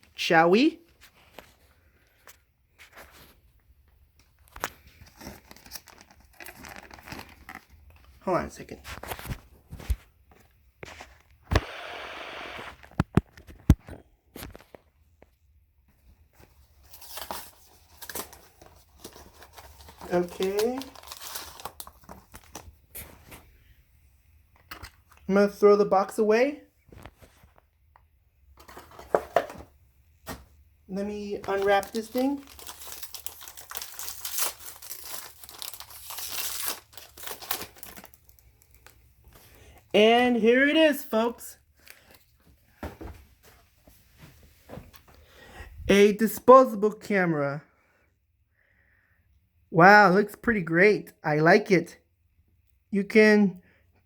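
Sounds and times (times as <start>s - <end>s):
plastic wrapping crackling: 4.4s - 8.2s, 17.0s - 22.8s, 31.0s - 40.4s.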